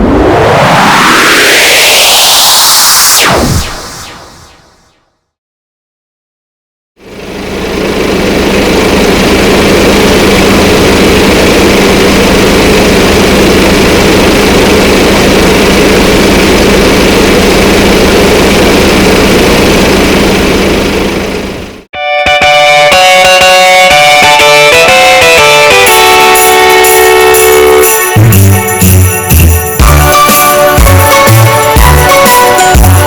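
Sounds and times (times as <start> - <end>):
diesel generator engine drone: 7.0 - 33.0.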